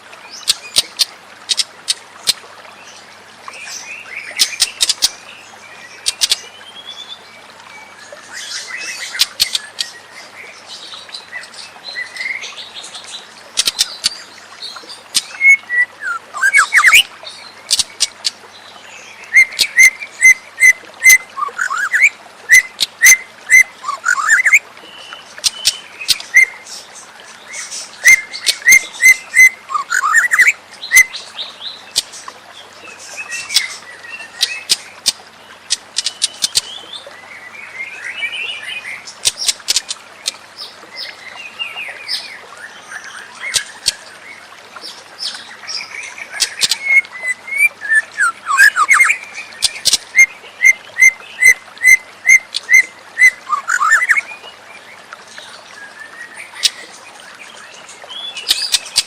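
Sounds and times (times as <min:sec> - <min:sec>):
bird singing whistled notes: 0:46.6 - 0:49.2, 0:50.2 - 0:54.3.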